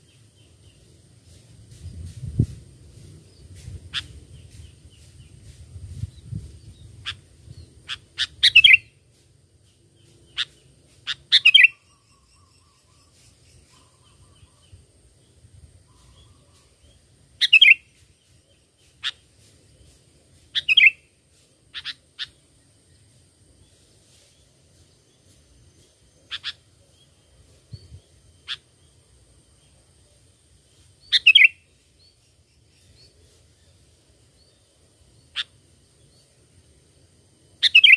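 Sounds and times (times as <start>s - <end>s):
bulbul chirpy calls: 6.8s - 9.0s, 10.3s - 14.7s, 15.9s - 19.3s, 20.5s - 21.1s, 21.7s - 22.5s, 26.2s - 27.3s, 28.4s - 29.0s, 31.0s - 33.1s, 35.2s - 35.8s, 37.6s - 37.9s.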